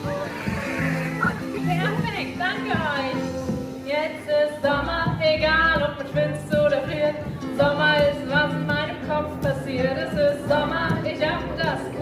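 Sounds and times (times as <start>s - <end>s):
bass guitar: 0.0s - 3.9s, 4.6s - 12.0s
ukulele: 4.6s - 12.0s.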